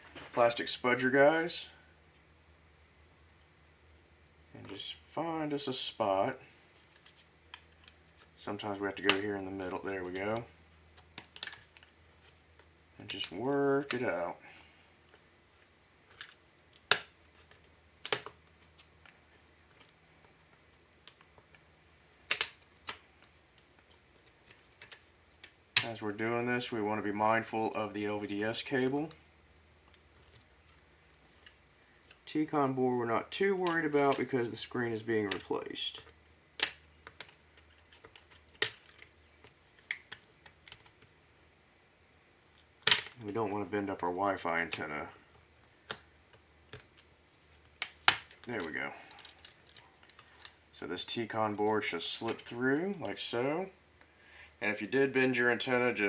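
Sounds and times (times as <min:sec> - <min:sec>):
plastic tool clicking laptop parts: 0:16.1 - 0:21.6, 0:22.2 - 0:25.9, 0:35.2 - 0:41.2, 0:42.6 - 0:43.3, 0:45.6 - 0:50.6.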